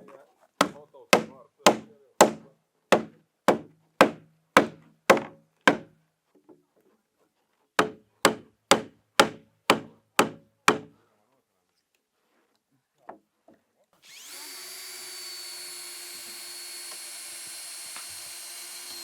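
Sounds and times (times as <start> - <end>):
hand tool striking wood: 0.6 - 5.9, 7.8 - 10.9, 15.3 - 19.0.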